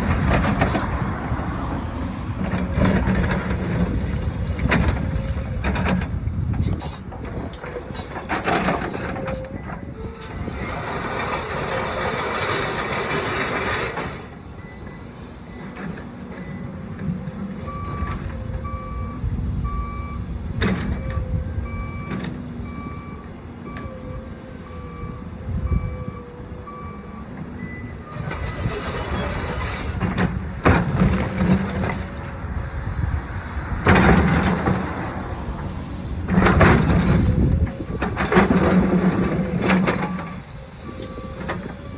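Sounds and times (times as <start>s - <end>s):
backhoe diesel engine: 0.0s - 41.9s
reversing alarm beeping: 8.9s - 15.8s, 16.4s - 20.3s, 20.9s - 30.0s, 36.8s - 41.9s
rough harsh noise: 10.2s - 14.4s, 28.1s - 32.2s.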